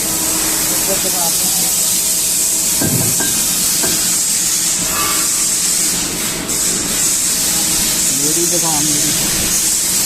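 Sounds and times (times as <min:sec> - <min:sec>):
turning machine hissing: 0:00.0 - 0:10.0
low thump: 0:02.8 - 0:03.4.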